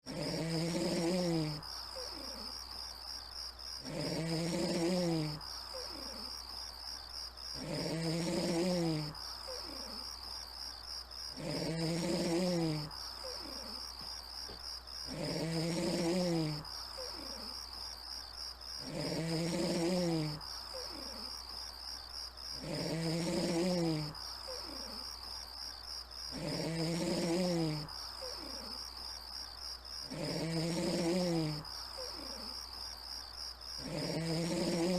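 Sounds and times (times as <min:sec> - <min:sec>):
person snoring: 0:00.0 - 0:02.6, 0:03.8 - 0:06.4, 0:07.6 - 0:10.1, 0:11.3 - 0:13.9, 0:15.1 - 0:17.6, 0:18.8 - 0:21.4, 0:22.6 - 0:25.1, 0:26.3 - 0:28.8, 0:30.0 - 0:32.6, 0:33.8 - 0:34.9.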